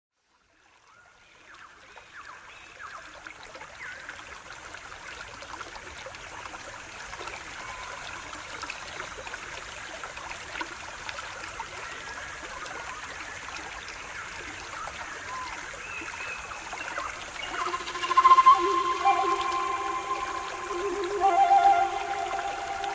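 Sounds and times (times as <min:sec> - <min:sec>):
trickling stream water: 0:00.1 - 0:22.9
sustained flute notes: 0:17.4 - 0:22.9.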